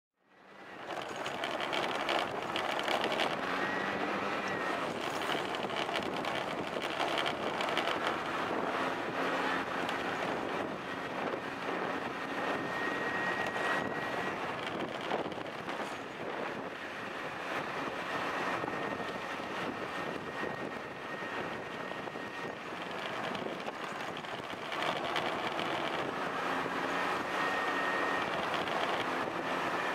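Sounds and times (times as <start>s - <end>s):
scooter two-stroke engine running: 0.8s - 8.9s, 11.5s - 16.3s, 18.4s - 27.2s, 28.0s - 29.9s
wind buffeting microphone: 2.2s - 29.9s.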